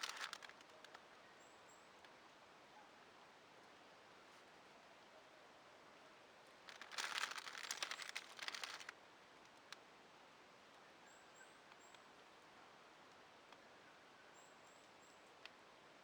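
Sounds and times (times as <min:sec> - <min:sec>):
rustling crackling noise: 0:00.0 - 0:01.0, 0:06.7 - 0:09.0.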